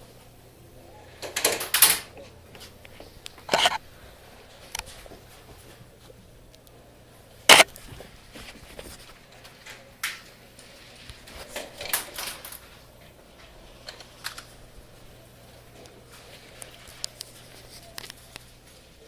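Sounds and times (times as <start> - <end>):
sharp clicks and snaps: 7.5 - 7.8.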